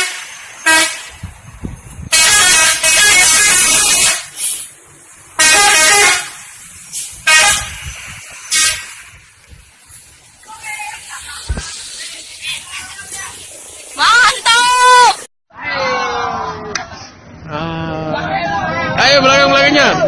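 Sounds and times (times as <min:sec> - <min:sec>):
multi-tone musical air horn: 0:00.0 - 0:01.1, 0:02.1 - 0:04.4, 0:05.4 - 0:06.4, 0:07.2 - 0:07.8.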